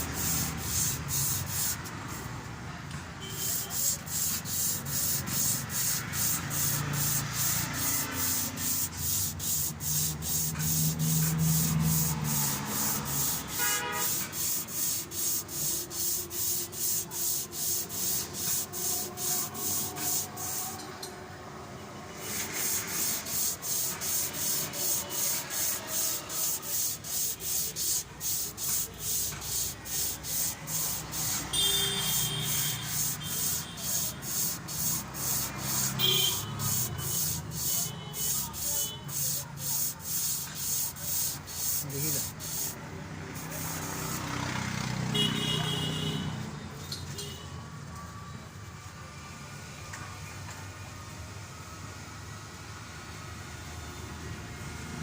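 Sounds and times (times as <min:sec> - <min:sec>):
abrasive rubbing back and forth: 0:00.0 - 0:02.3, 0:03.5 - 0:20.8, 0:22.3 - 0:42.8.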